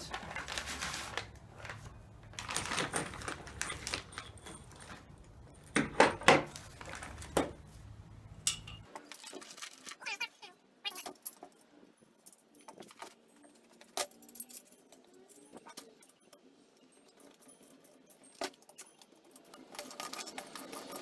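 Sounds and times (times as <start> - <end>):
bolts and nuts clinking: 8.5 - 21.0.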